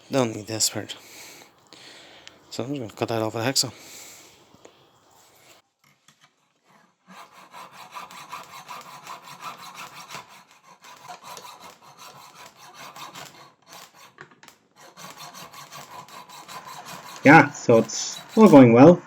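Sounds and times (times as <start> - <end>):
hacksaw cutting metal: 7.0 - 18.7.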